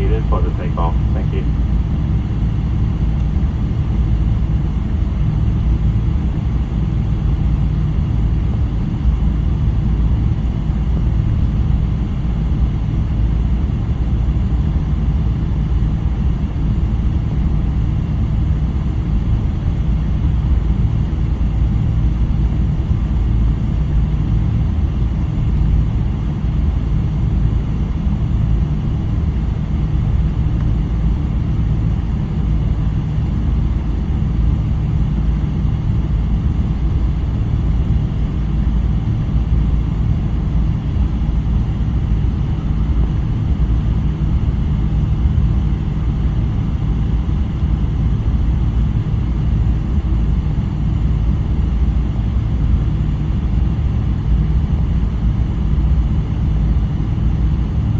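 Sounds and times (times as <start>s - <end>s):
aircraft cabin engine rumble: 0.0s - 57.9s.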